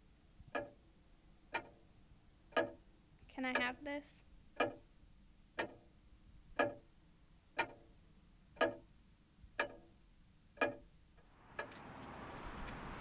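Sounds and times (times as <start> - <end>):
clock ticking: 0.5 - 0.8, 1.5 - 1.8, 2.5 - 2.8, 3.4 - 3.9, 4.5 - 4.9, 5.6 - 5.9, 6.5 - 6.9, 7.6 - 7.9, 8.6 - 8.9, 9.6 - 9.9, 10.6 - 10.9
steady rushing noise: 11.2 - 13.0.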